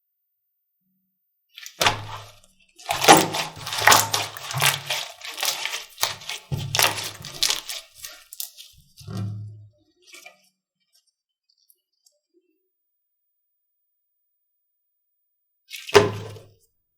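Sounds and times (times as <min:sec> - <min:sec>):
slime crackling and popping: 0:02.9 - 0:08.7.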